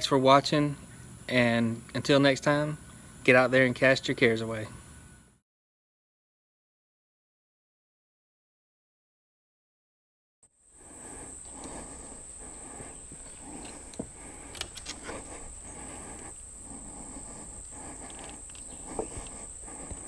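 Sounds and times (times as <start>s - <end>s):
high-pitched insect drone: 10.6s - 20.0s
animal-like rumbling: 10.8s - 20.0s.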